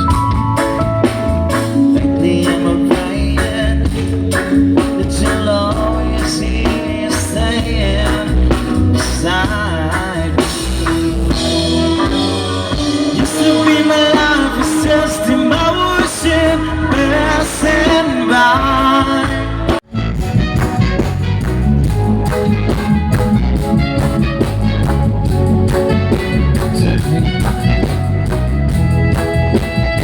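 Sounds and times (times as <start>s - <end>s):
live band playing love song: 0.0s - 30.0s
lead singer: 1.7s - 19.8s.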